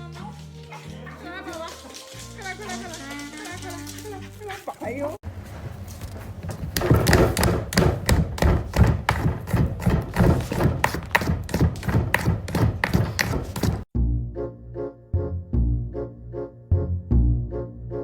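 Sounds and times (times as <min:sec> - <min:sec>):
rapid thumps and taps: 0:06.0 - 0:13.9.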